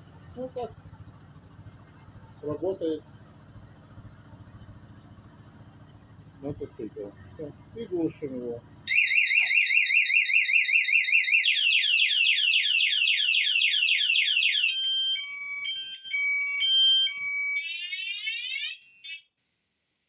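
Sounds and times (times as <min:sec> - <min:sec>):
motorcycle alarm siren: 0:00.1 - 0:07.1, 0:08.7 - 0:19.3.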